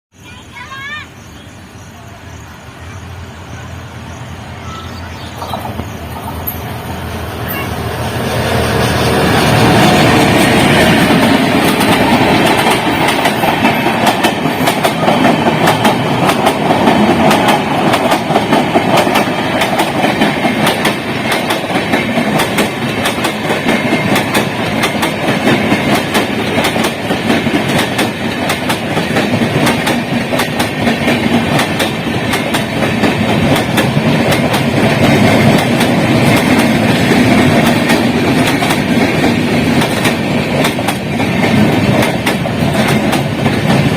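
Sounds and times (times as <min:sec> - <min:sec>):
train coaches rumbling: 0:00.1 - 0:43.9
wheels clicking over rail joints: 0:10.3 - 0:43.9.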